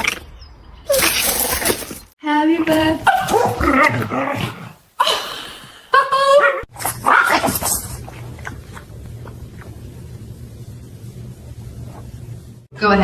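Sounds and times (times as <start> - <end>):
faint low hum: 7.6 - 13.0.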